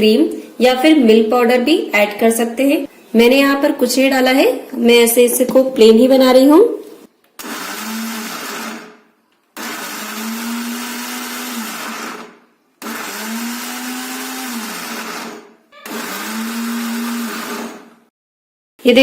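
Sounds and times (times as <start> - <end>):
mixer grinder motor whirring: 7.4 - 18.1.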